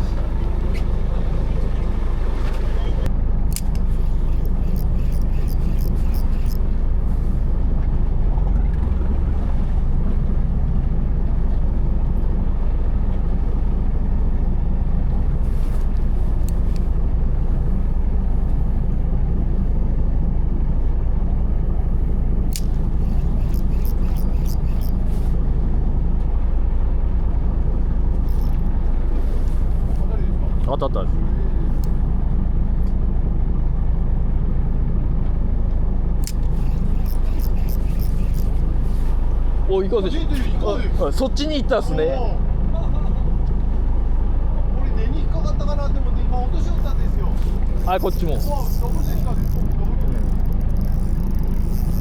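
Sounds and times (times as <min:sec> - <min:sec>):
boat engine running: 0:00.0 - 0:10.9, 0:21.5 - 0:25.6, 0:28.1 - 0:30.6, 0:36.2 - 0:39.7, 0:46.6 - 0:52.0
light clicks: 0:03.5 - 0:06.6, 0:22.5 - 0:25.0, 0:28.2 - 0:28.7, 0:36.2 - 0:38.6, 0:46.8 - 0:52.0.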